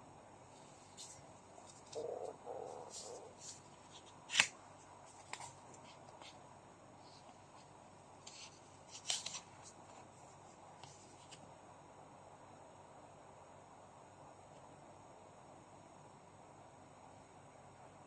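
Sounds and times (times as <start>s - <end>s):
cards rustling and clicking: 0.9s - 6.4s, 7.1s - 10.1s.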